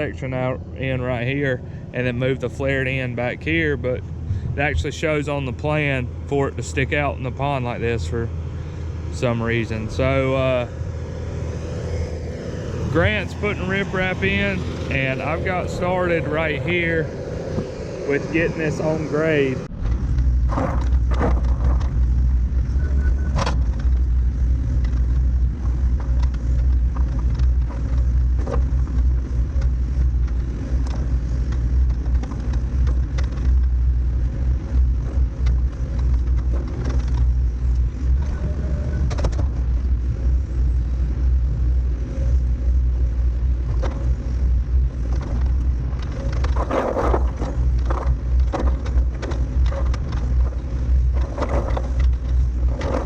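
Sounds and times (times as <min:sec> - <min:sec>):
diesel engine running under load: 0:00.0 - 0:53.0
machine scraping and clanking: 0:12.8 - 0:40.0, 0:43.6 - 0:53.0.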